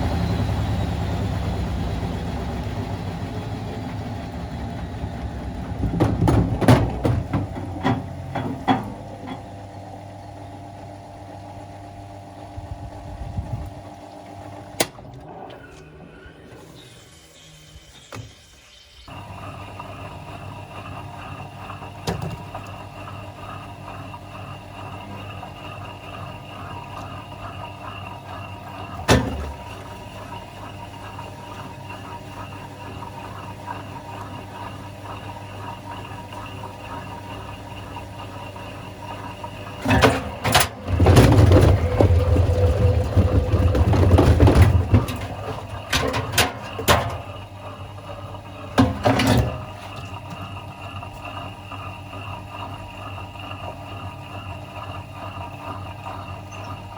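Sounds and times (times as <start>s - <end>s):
washing machine motor hum: 0.0s - 56.9s
heavy rumbling and knocking: 1.3s - 8.9s, 40.0s - 46.2s.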